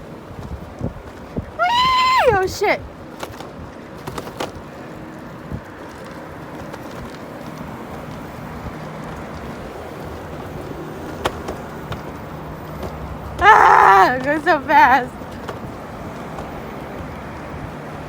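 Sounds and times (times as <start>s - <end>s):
scooter wheel and wind noise: 0.0s - 18.0s.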